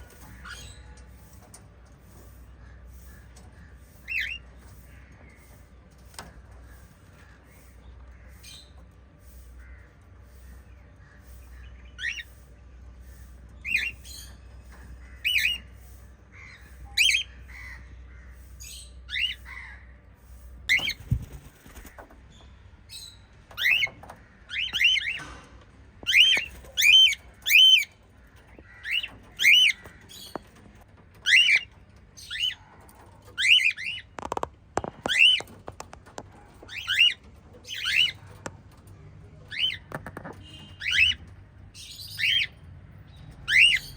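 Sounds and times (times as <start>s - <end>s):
parrots chirping shrilly: 3.8s - 4.5s, 11.3s - 12.3s, 15.1s - 19.7s, 26.1s - 27.9s, 28.6s - 30.4s, 36.6s - 38.2s, 40.5s - 41.2s, 43.4s - 43.9s.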